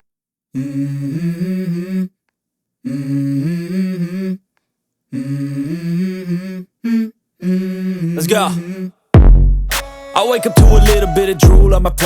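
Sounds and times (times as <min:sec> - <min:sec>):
person humming a melody: 0:05.1 - 0:09.0, 0:10.2 - 0:12.0.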